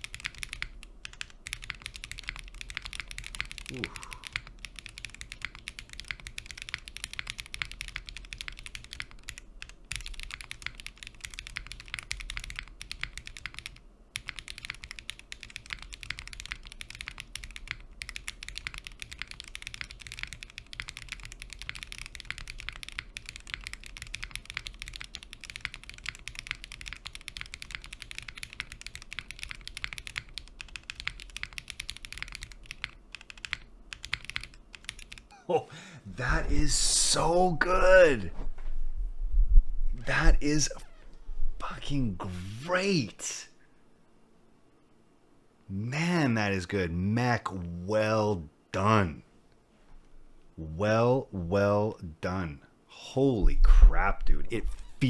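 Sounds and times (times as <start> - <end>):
fast mechanical keyboard typing: 0.0 - 35.3.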